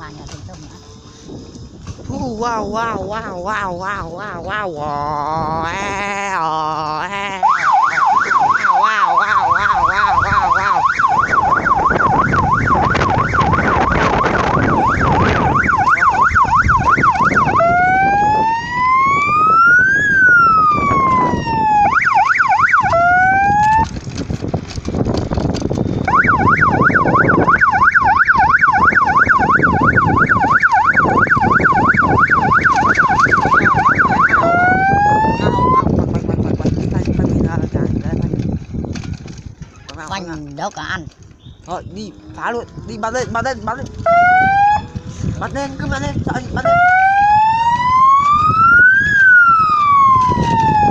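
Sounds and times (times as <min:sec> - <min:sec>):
electronic siren yelping and wailing: 0:07.1 - 0:23.9, 0:26.0 - 0:36.0, 0:42.0 - 0:45.1, 0:46.6 - 0:50.9.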